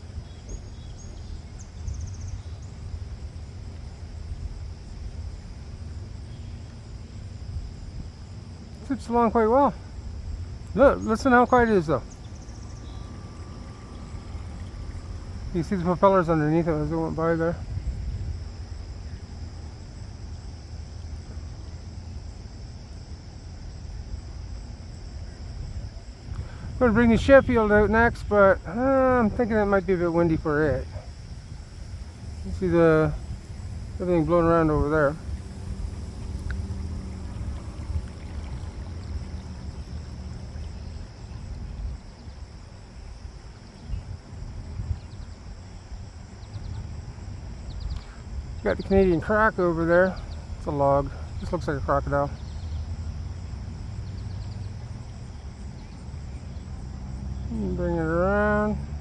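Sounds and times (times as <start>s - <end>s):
wind buffeting microphone: 0.0s - 57.6s
insect chorus: 0.0s - 59.0s.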